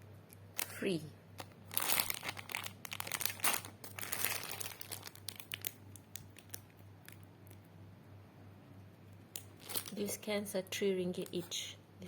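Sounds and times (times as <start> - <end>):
packaging crinkling: 1.4 - 7.6, 9.4 - 10.3.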